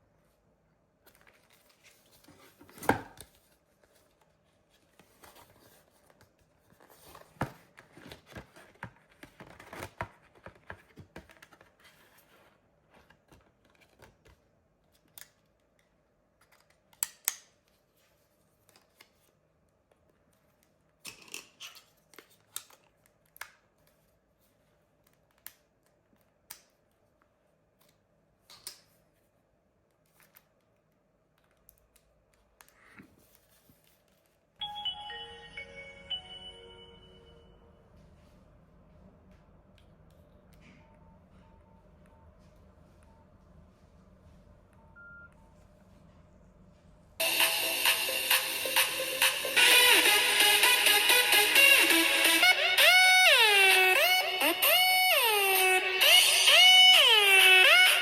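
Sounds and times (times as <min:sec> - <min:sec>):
faint steady hum: 0:29.2 - 0:49.0.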